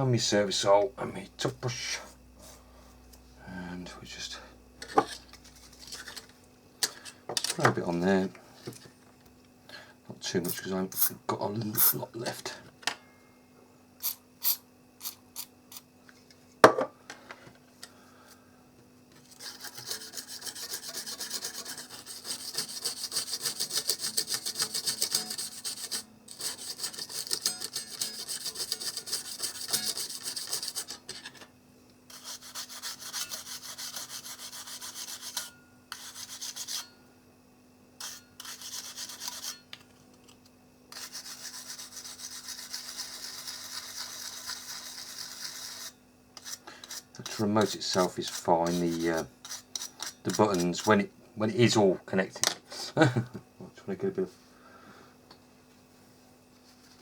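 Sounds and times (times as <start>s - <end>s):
toothbrush scrubbing circuit board: 19.2s - 31.1s, 32.1s - 36.8s, 38.0s - 39.6s, 40.9s - 50.9s.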